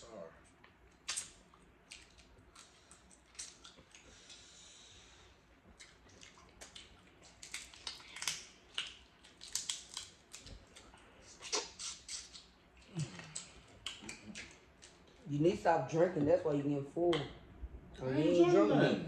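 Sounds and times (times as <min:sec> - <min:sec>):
crab shells cracking: 0:05.9 - 0:10.8.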